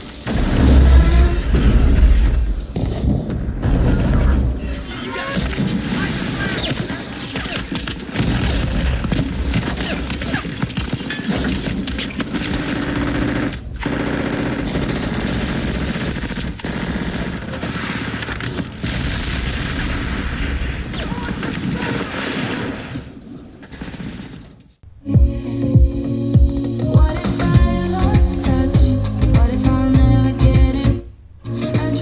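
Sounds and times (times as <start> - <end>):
deep bass rumble: 0.3 - 4.6, 25.2 - 31.1
automatic gunfire: 5.2 - 24.6.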